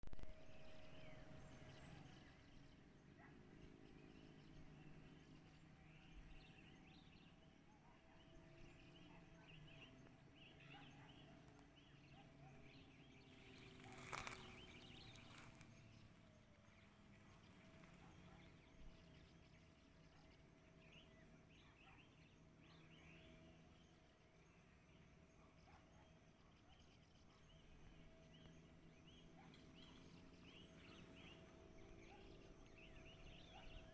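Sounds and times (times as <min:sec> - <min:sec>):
low steady hum: 0:00.2 - 0:21.7.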